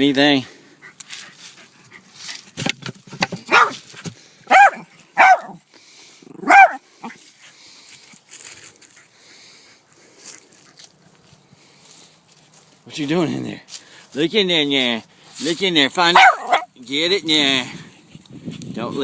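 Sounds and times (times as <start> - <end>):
dog barking: 3.5 - 3.8, 4.5 - 5.6, 6.4 - 6.8, 16.1 - 16.7.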